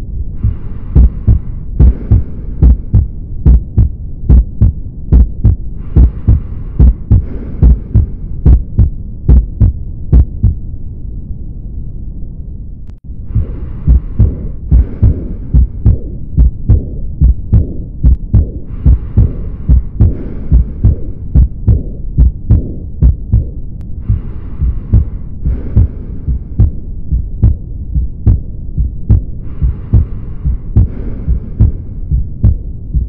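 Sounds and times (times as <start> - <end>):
heart sounds thumping: 0.4 - 10.7, 13.3 - 33.0.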